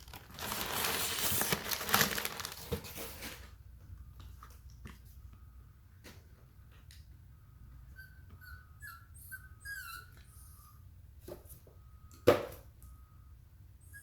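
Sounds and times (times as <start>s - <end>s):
packaging crinkling and rustling: 0.0s - 3.6s.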